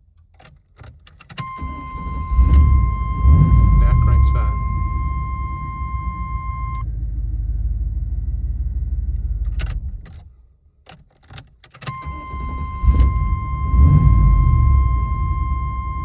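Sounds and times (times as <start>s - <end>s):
key clicks in ignition: 0.0s - 6.8s, 8.4s - 16.0s
engine cranking: 0.2s - 6.8s, 10.9s - 16.0s
steady warning tone: 1.4s - 6.8s, 11.9s - 16.0s
truck engine running: 1.6s - 9.9s.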